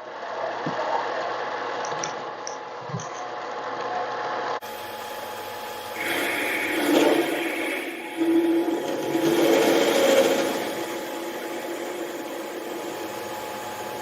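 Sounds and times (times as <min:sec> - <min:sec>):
lathe motor hum: 0:04.6 - 0:14.0
drill cutting metal: 0:04.7 - 0:14.0.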